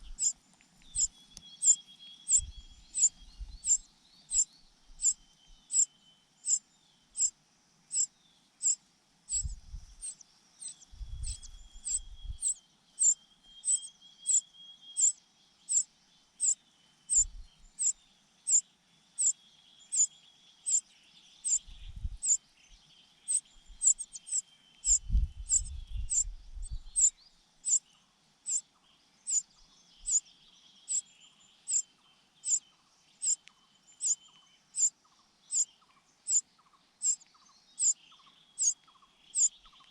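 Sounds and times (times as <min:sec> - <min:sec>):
bird high sharp call: 0:07.9 - 0:14.4, 0:15.0 - 0:15.8.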